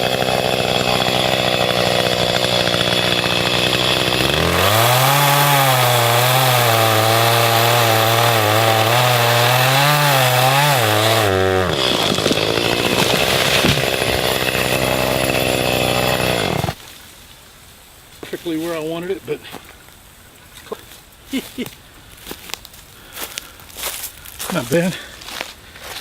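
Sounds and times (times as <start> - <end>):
chainsaw cutting wood: 0.0 - 16.8.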